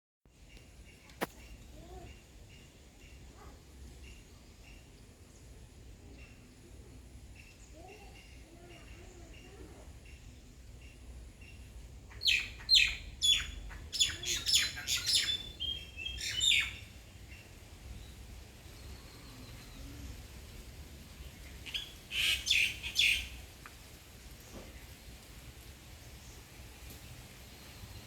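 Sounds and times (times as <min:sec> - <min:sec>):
bird chirps: 0:07.3 - 0:16.9, 0:21.7 - 0:23.4.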